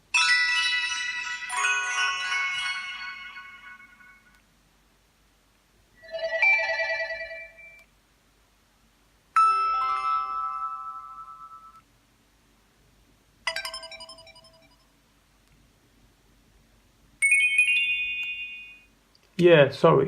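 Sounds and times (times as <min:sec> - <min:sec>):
chime-like phone tone: 0:00.2 - 0:04.3, 0:06.0 - 0:07.8, 0:09.4 - 0:11.8, 0:13.5 - 0:14.9.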